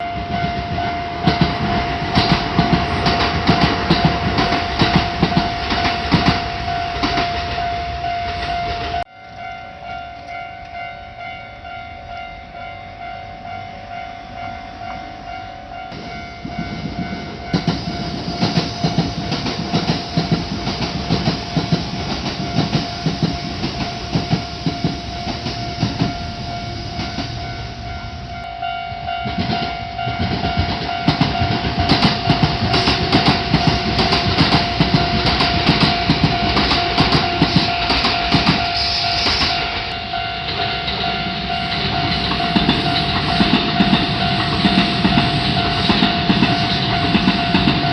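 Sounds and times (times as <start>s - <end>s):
level-crossing warning bell: 0.0s - 47.9s
train wheels clattering over rail joints: 0.3s - 7.5s, 16.0s - 26.2s, 29.3s - 47.9s.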